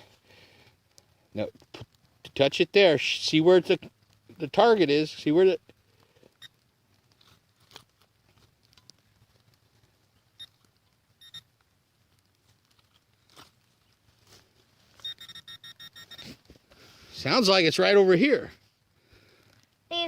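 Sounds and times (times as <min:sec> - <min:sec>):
faint ticks and clicks: 0:00.3 - 0:14.0, 0:19.0 - 0:19.9
pinpointer probe beeping: 0:11.2 - 0:11.5, 0:15.0 - 0:16.3.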